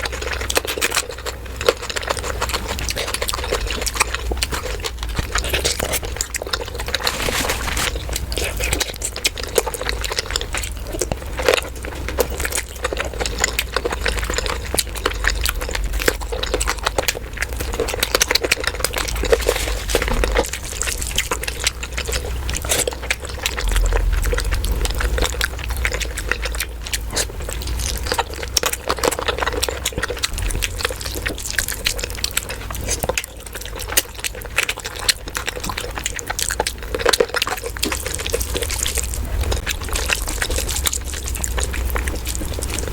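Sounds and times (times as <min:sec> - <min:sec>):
wet chewing and slurping: 0:00.0 - 0:42.9.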